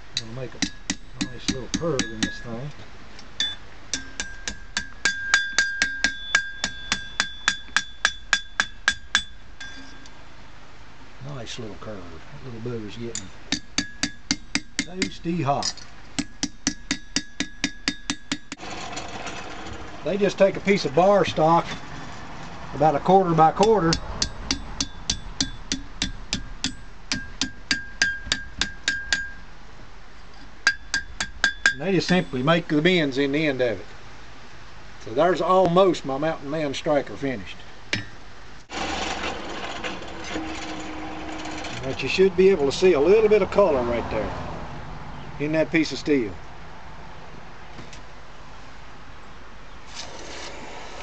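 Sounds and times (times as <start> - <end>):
hammer striking hot steel on anvil: 0.2 - 2.5, 3.4 - 10.1, 13.1 - 18.6, 23.6 - 29.4, 30.6 - 32.3, 37.9 - 38.2.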